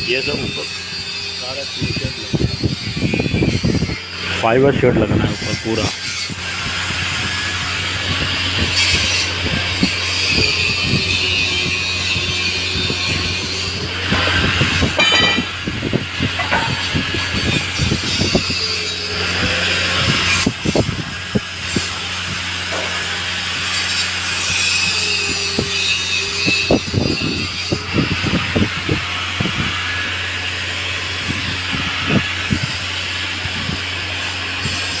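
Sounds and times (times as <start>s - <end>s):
metal knocks and taps: 15.0s - 15.6s, 16.4s - 17.1s.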